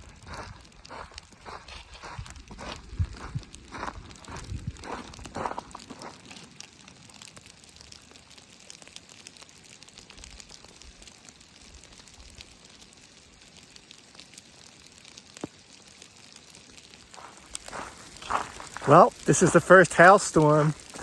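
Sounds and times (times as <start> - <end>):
hailstones ticking: 0.0 - 21.0
steady hiss: 15.2 - 21.0.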